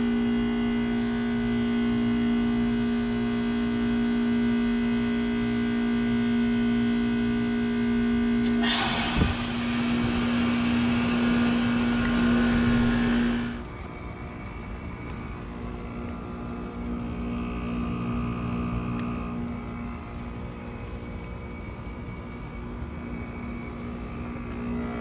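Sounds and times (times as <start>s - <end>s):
compressor humming: 0.0s - 25.0s
refrigerant rushing hiss: 8.5s - 12.0s
valve click: 11.2s - 13.6s, 18.1s - 19.3s.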